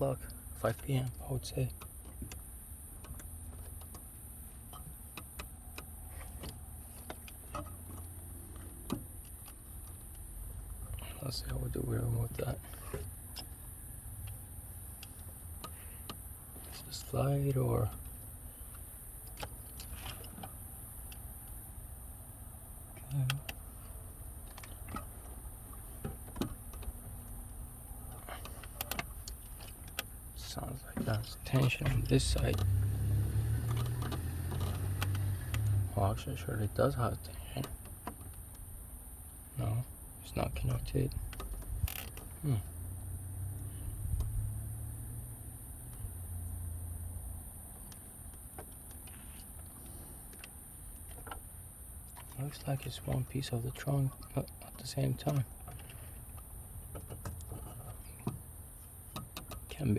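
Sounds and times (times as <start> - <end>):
steady low hum: 0.0 - 59.9
clicks and knocks on car parts: 24.4 - 27.4, 55.3 - 59.8.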